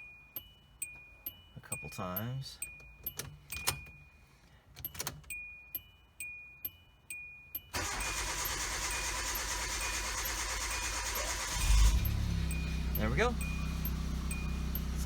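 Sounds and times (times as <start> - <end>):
ignition key clicks: 2.8 - 4.0, 4.8 - 5.4
car engine starting and running: 7.7 - 15.0.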